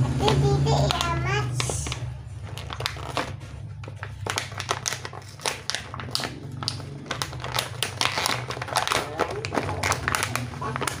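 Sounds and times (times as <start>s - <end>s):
plastic crinkling: 0.2s - 11.0s
plastic toy pieces clicking: 4.2s - 11.0s.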